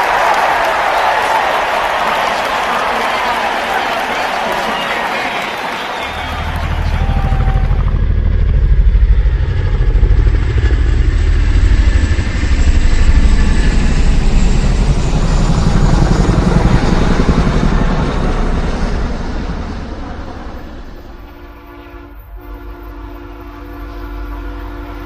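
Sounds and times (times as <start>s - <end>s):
loud vehicle engine pulsing: 6.1s - 24.8s.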